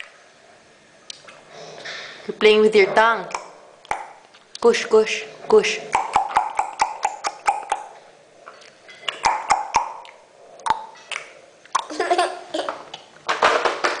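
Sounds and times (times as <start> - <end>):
baby clicking tongue: 5.9 - 7.9, 9.1 - 11.9.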